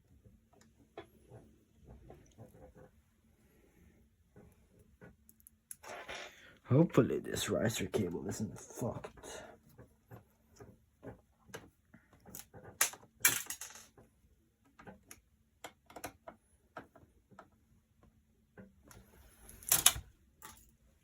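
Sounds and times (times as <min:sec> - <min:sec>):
small screw dropping and clattering: 0:12.2 - 0:14.0
computer hardware clicks and knocks: 0:14.7 - 0:17.5.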